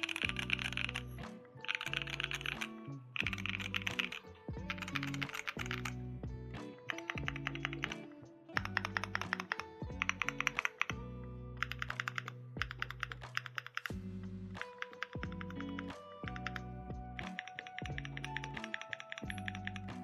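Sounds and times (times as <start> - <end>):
mechanical keyboard typing: 0.0 - 1.0, 1.7 - 6.0, 6.9 - 8.0, 8.6 - 10.9, 11.6 - 13.9, 14.8 - 16.6, 17.2 - 19.9
background music: 0.0 - 20.0.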